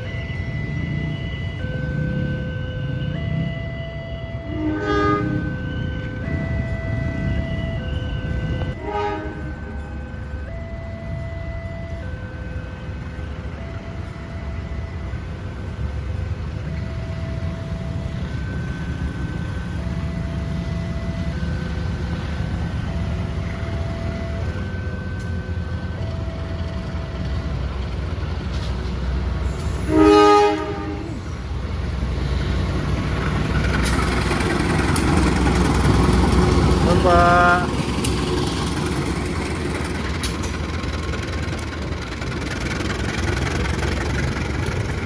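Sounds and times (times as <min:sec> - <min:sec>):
train rumbling by: 0:00.0 - 0:45.0
train horn blast: 0:04.4 - 0:06.4, 0:08.8 - 0:09.8, 0:29.4 - 0:31.4, 0:36.8 - 0:38.0.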